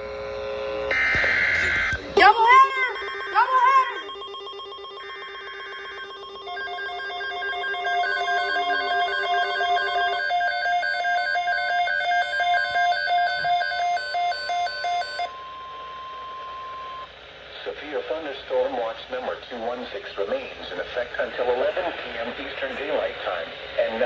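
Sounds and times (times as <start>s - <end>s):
steady single tone: 0.9s - 12.8s
two-note alert tone: 0.9s - 15.2s
rapid warbling beeps: 0.9s - 15.3s.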